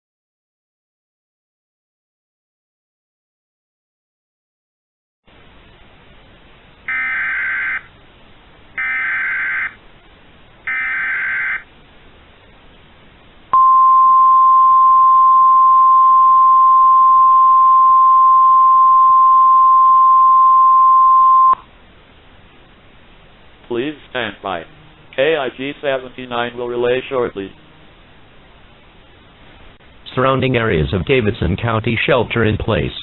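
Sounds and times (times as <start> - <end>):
steady warning alarm tone: 6.9 - 7.9, 8.8 - 9.8, 10.7 - 11.7.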